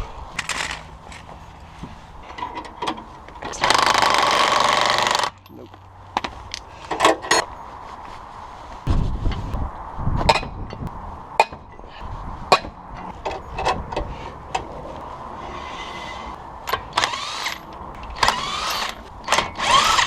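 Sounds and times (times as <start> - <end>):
impact wrench rattling: 0.4 - 1.2.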